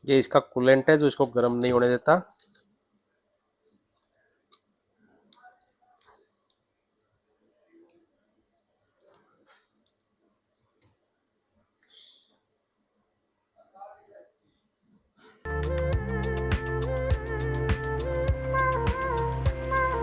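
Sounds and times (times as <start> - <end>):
small tools clicking and tapping: 1.4 - 2.7.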